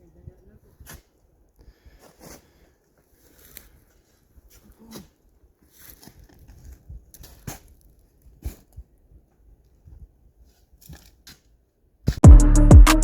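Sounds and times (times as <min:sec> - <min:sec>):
hand tools digging into dirt and rock: 0:02.0 - 0:08.9, 0:10.6 - 0:12.2.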